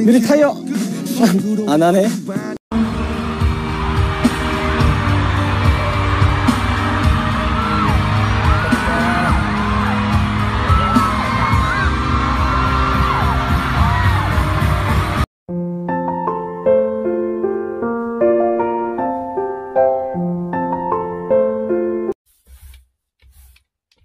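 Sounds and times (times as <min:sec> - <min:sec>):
pop music with heavy beat: 0:00.7 - 0:15.2.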